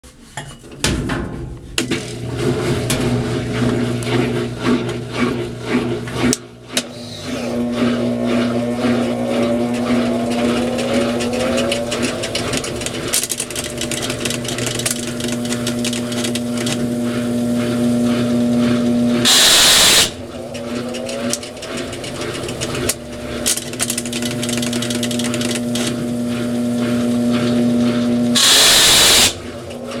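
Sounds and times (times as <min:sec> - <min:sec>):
washing machine motor hum: 0:00.8 - 0:30.0
rapid grinding rattle: 0:02.1 - 0:30.0
loud hiss: 0:19.3 - 0:20.2, 0:28.4 - 0:29.4.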